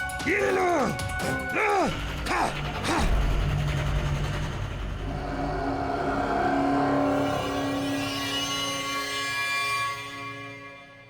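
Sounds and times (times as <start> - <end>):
steady low drone: 1.4 - 9.2.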